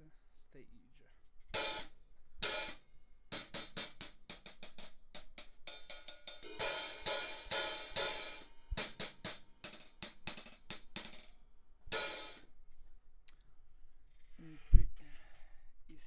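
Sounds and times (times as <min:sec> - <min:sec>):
hi-hat strikes: 0:01.5 - 0:12.5.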